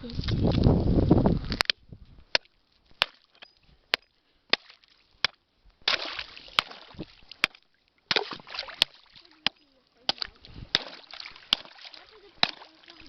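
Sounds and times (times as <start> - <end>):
splashing or scraping noise: 5.8 - 9.4.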